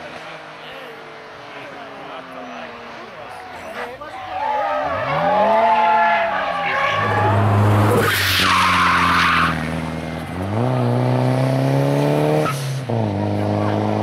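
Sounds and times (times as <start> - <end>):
car engine revving: 0.0 - 14.0
tyres squealing: 3.4 - 9.6.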